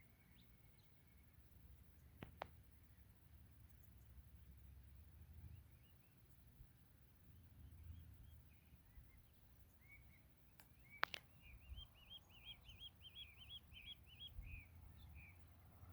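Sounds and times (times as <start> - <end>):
birds chirping faintly: 0.0 - 15.9
rising-and-falling bird chirps: 7.7 - 15.9
sharp click: 10.6 - 11.3.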